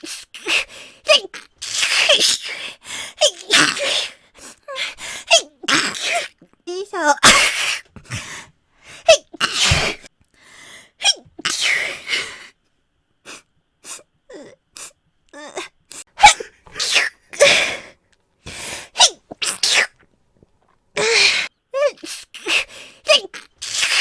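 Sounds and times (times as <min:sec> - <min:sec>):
woman sneezing: 0:03.2 - 0:04.2, 0:07.1 - 0:07.8, 0:09.1 - 0:10.1, 0:16.2 - 0:17.8, 0:19.0 - 0:19.9, 0:21.0 - 0:24.0.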